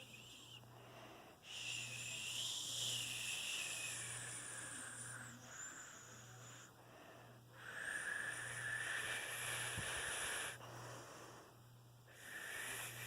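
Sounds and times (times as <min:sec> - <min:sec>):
person hissing breathily: 0:07.6 - 0:13.0.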